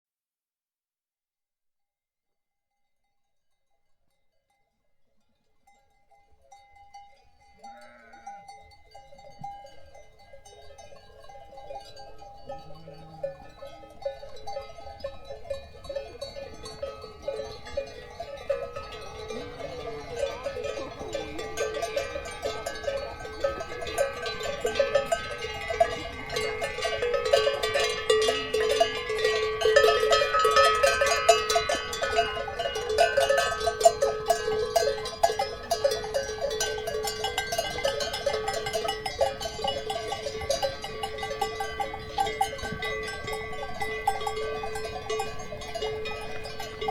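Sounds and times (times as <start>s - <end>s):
animal bells clanking: 2.7s - 46.9s
sheep and goats bleating: 7.6s - 8.5s, 12.4s - 13.6s.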